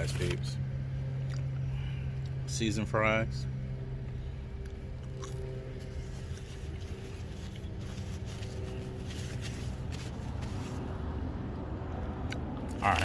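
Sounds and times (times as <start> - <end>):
low hum: 0.2 - 12.7
person chewing fries: 4.6 - 7.8
rustling: 5.8 - 10.9.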